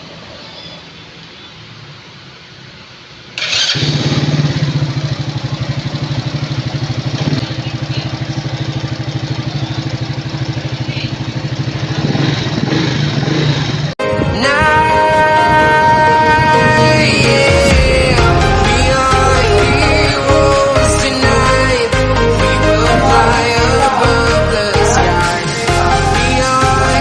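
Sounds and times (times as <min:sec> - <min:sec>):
motorcycle engine idling: 0:03.3 - 0:14.0, 0:15.9 - 0:27.0
music: 0:14.0 - 0:27.0.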